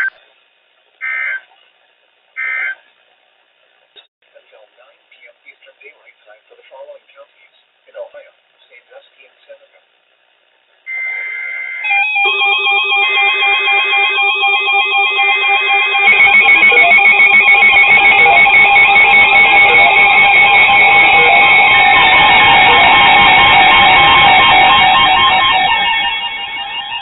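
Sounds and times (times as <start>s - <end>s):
warbling electronic alert tones: 10.9s - 27.0s.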